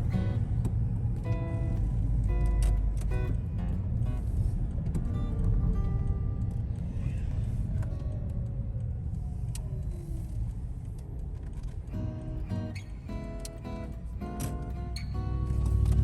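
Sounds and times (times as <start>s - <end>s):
background guitar music: 0.0s - 6.7s, 12.0s - 16.0s
road traffic rumble: 0.0s - 16.0s.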